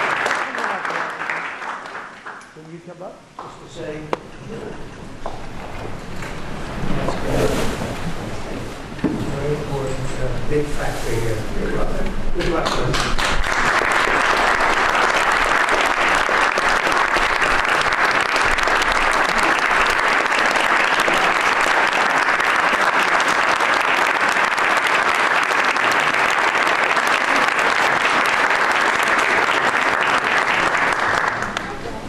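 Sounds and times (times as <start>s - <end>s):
audience applauding: 0.0s - 2.8s, 12.4s - 32.0s.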